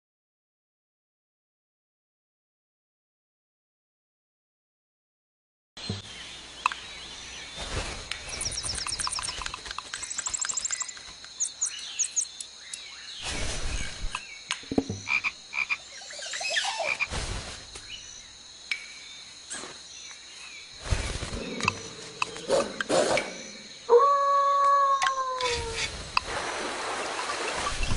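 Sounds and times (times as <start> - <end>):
frogs croaking: 8.2 - 13.2, 13.8 - 17.1, 18.0 - 27.6
quick trilling chirps: 8.3 - 12.4
scattered clicks: 8.4 - 12.8.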